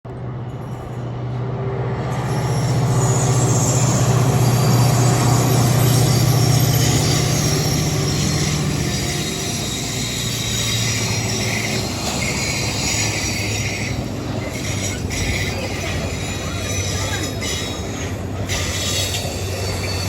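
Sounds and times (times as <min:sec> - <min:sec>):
freight train passing: 0:00.1 - 0:20.0.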